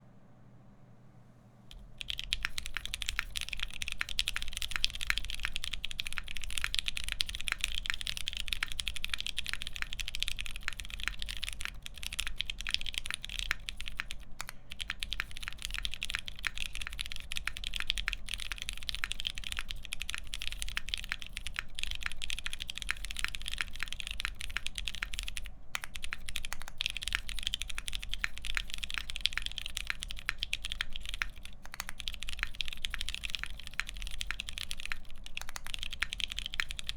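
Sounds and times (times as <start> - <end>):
typing on mechanical keyboard: 1.7 - 36.9.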